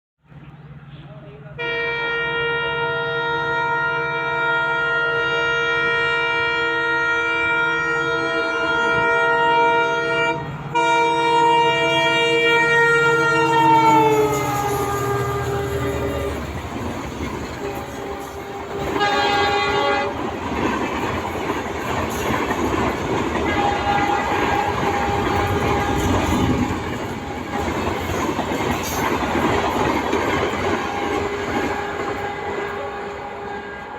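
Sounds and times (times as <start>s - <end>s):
train rumbling: 0.2s - 33.9s
locomotive horn chord: 1.5s - 20.4s, 23.3s - 28.1s, 30.5s - 33.9s.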